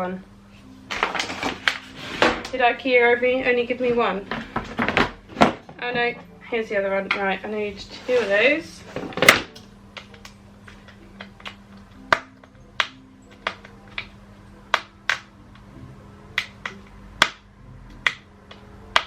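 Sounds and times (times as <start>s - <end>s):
furniture parts clicking and knocking: 4.3s - 6.2s.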